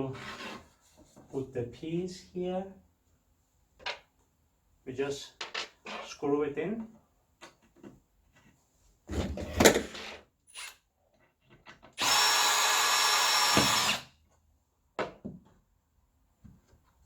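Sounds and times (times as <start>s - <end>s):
electric drill driving a screw: 12.0s - 14.1s.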